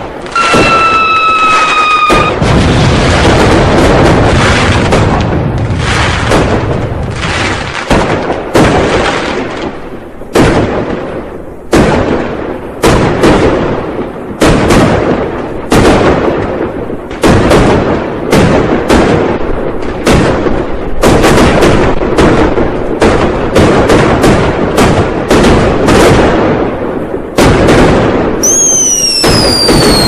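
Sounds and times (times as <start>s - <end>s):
firecrackers banging: 0.0s - 30.0s.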